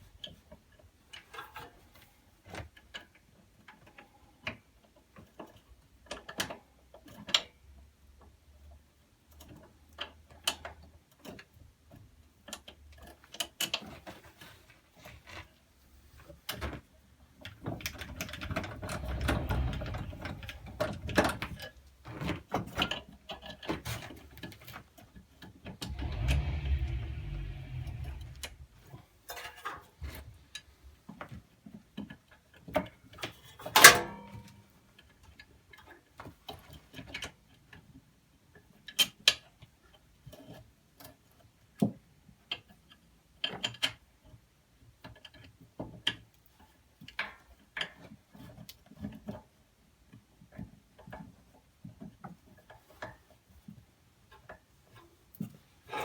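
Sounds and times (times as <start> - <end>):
rumbling and clatter: 18.1 - 21.6, 25.8 - 28.9.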